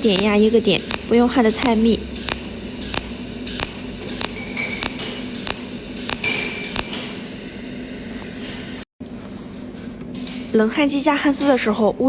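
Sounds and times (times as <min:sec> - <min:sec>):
low hum: 0:00.0 - 0:08.8
spot welder snapping: 0:00.0 - 0:08.8, 0:10.1 - 0:10.6
steady hiss: 0:00.0 - 0:08.9.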